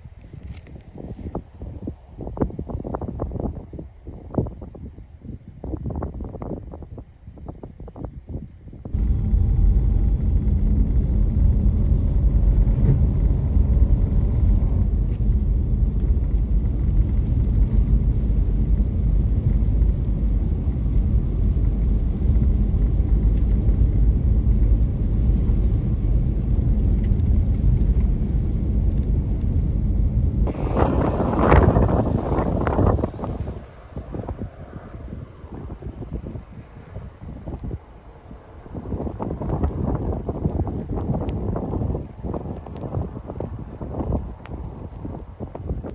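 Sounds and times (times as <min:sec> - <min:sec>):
car engine and tyres rumbling: 0:08.0 - 0:45.9
loud rushing noise: 0:09.0 - 0:16.2, 0:30.5 - 0:37.1.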